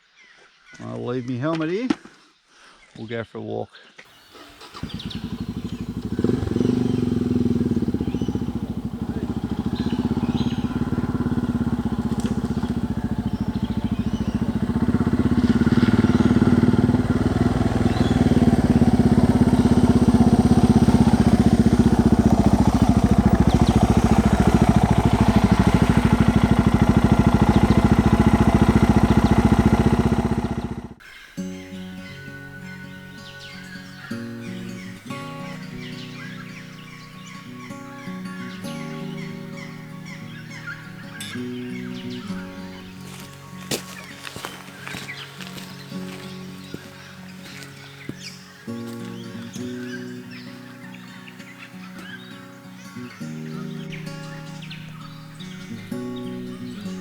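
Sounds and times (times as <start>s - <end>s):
single-cylinder engine running: 4.2s - 31.0s, 38.8s - 48.1s, 53.5s - 57.0s.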